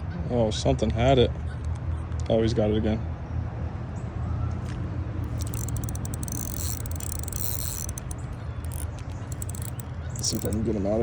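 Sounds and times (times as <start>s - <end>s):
fishing reel clicking: 5.2s - 10.6s.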